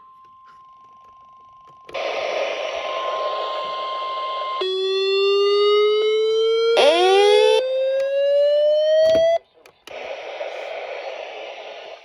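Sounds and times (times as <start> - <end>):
radio static hiss: 1.9 - 4.6, 9.2 - 12.0
electronic siren alarm tone: 2.0 - 9.4.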